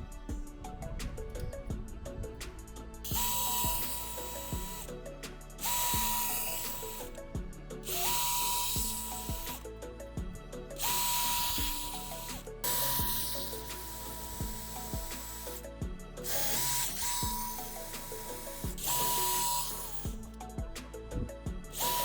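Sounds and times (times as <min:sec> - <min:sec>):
background music: 0:00.0 - 0:22.0
power tool motor whine: 0:00.8 - 0:04.9, 0:05.6 - 0:07.2, 0:07.8 - 0:09.7, 0:10.7 - 0:20.3, 0:21.7 - 0:22.0.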